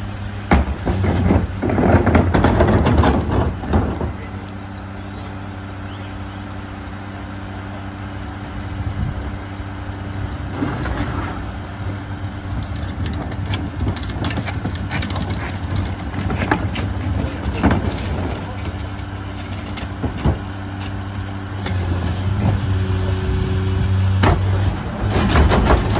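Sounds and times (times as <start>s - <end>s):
diesel engine idling: 0.0s - 25.9s
trash clattering and crunching: 0.5s - 4.5s, 10.3s - 25.9s.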